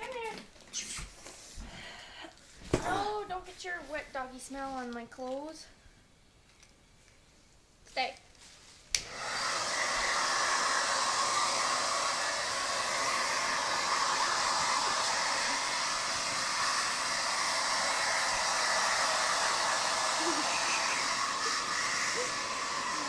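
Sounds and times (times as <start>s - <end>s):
hair dryer switch click: 9.0s - 9.2s
hair dryer blowing: 9.0s - 23.0s.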